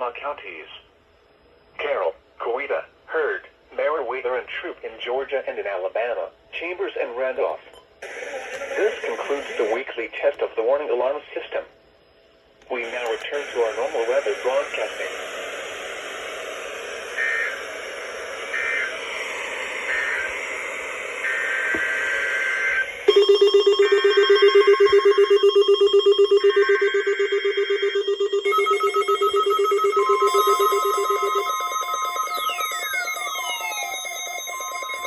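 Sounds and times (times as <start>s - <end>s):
screeching digital data bursts: 8.0s - 9.9s, 12.8s - 35.0s
radio static: 8.0s - 11.7s, 12.6s - 23.2s
steady alert tones: 12.8s - 35.0s
warning alarm tone: 12.8s - 35.0s.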